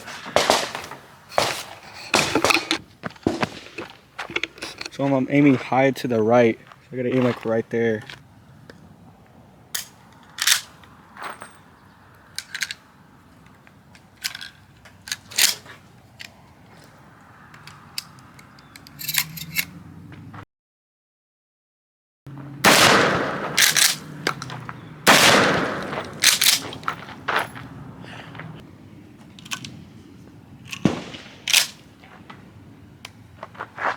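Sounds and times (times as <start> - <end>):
rifle shots: 0.0 - 5.0, 22.4 - 27.6, 30.6 - 32.9.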